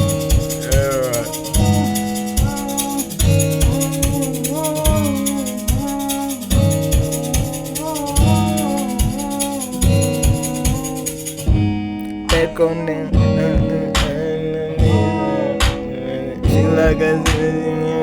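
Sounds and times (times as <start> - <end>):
fast shaker pattern: 0.0 - 11.5
kick and bass hits: 11.5 - 12.5.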